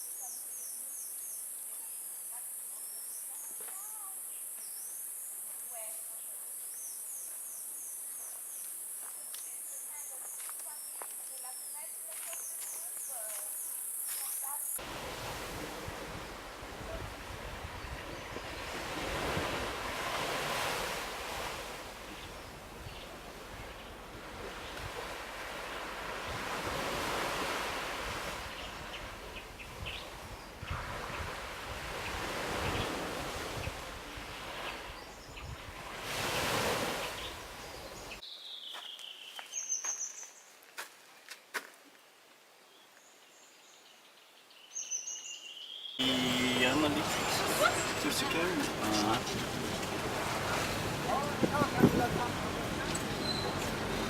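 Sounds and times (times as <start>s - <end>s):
ocean surf rushing: 14.8s - 22.1s, 24.2s - 29.0s, 46.0s - 54.0s
wind buffeting microphone: 15.1s - 20.3s, 26.2s - 35.8s, 48.7s - 54.0s.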